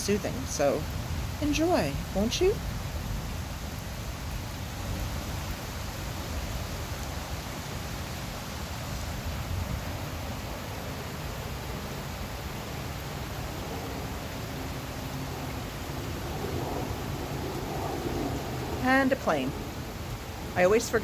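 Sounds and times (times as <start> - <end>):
low thunder rumble: 0.0 - 7.4, 13.2 - 21.0
heavy rain falling: 0.0 - 21.0.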